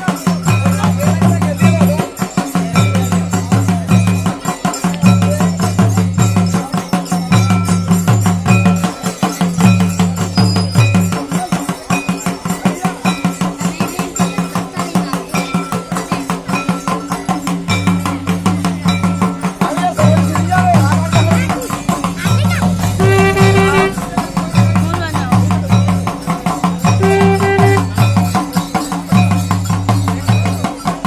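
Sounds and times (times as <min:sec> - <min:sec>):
fast dense percussion: 0:00.0 - 0:31.0
folk dance music: 0:22.1 - 0:25.4, 0:26.2 - 0:28.2
deep bass line: 0:27.0 - 0:27.9.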